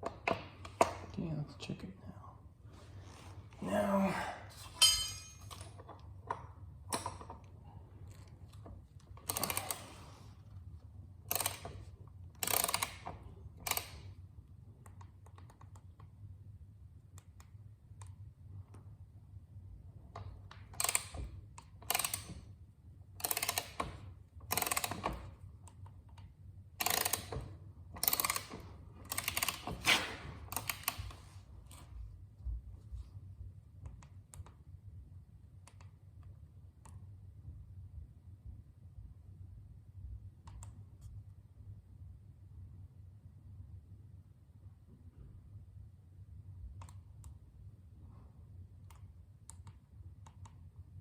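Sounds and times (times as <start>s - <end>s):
hand tool clicking and rattling: 9.2s - 9.9s, 12.4s - 14.0s, 20.7s - 21.2s, 21.8s - 22.4s, 23.2s - 23.9s, 24.5s - 25.2s, 26.8s - 27.4s, 28.0s - 31.2s.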